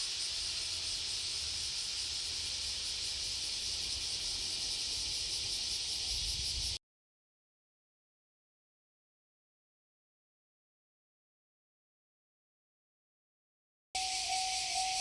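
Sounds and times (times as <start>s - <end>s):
cicada chorus buzzing: 0.0s - 6.8s, 14.0s - 15.0s.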